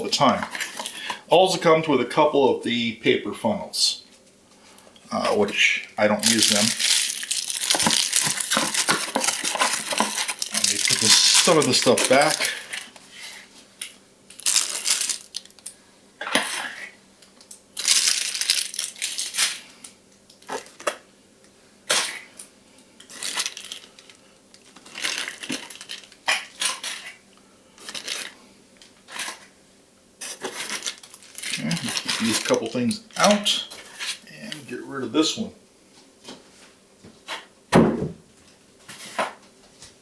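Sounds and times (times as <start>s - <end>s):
plastic packaging rustling: 6.1s - 13.0s, 14.3s - 15.7s, 17.8s - 19.6s, 23.1s - 26.2s, 27.8s - 28.4s, 30.3s - 33.4s.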